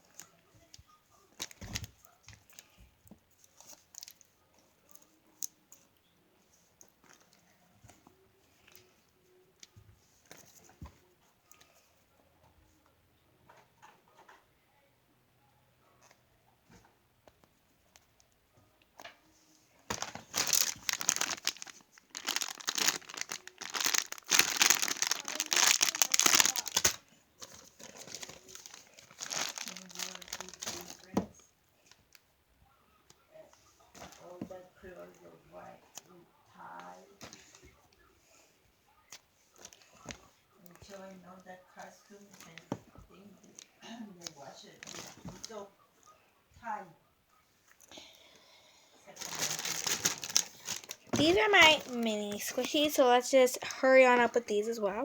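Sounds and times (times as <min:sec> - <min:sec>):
toy packaging rustling and tapping: 0:19.9 - 0:32.0, 0:44.7 - 0:45.6, 0:49.2 - 0:55.0.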